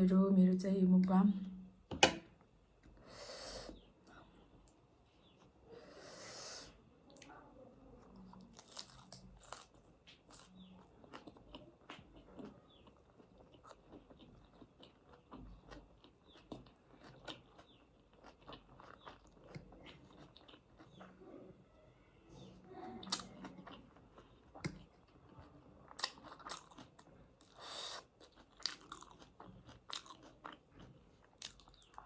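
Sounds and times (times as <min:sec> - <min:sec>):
person chewing food: 0:08.0 - 0:21.4, 0:22.9 - 0:32.0.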